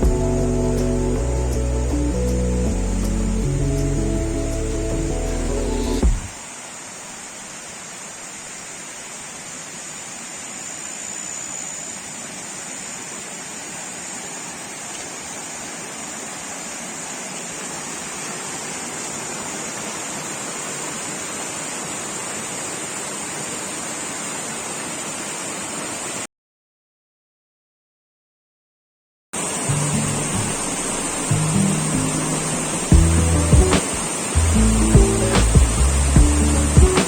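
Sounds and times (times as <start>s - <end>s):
stream water flowing: 4.1s - 26.2s, 29.4s - 37.0s.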